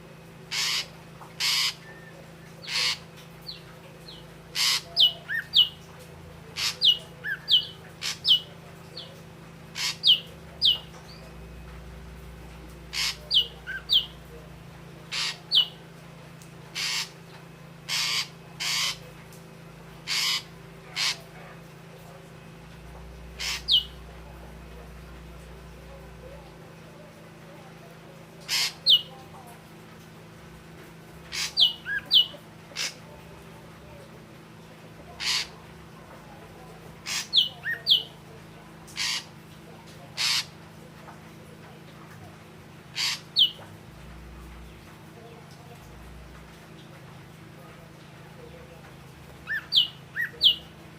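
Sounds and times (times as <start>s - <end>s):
bird harsh rasping calls: 0.5s - 3.6s, 4.5s - 5.8s, 6.5s - 8.5s, 9.7s - 10.9s, 12.9s - 14.2s, 15.1s - 15.8s, 16.7s - 17.2s, 17.8s - 19.1s, 20.0s - 21.5s, 23.4s - 24.0s, 28.4s - 29.1s, 31.3s - 33.1s, 35.1s - 35.6s, 37.0s - 38.2s, 38.9s - 39.4s, 40.1s - 40.6s, 42.9s - 43.6s, 49.4s - 50.7s.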